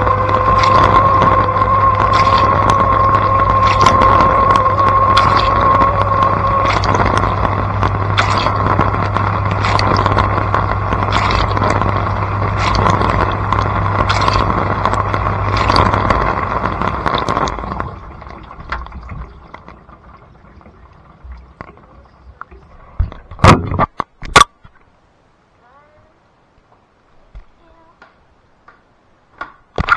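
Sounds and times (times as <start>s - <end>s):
dishwasher pump humming: 0.0s - 23.4s
water spraying and swishing: 0.0s - 23.8s.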